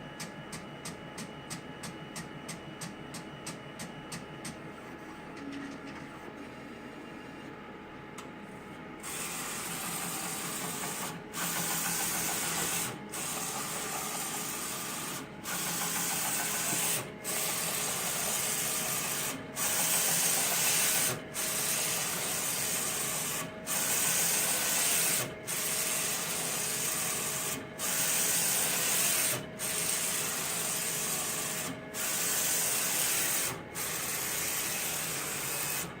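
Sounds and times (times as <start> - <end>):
machine hissing whir: 9.0 - 36.0.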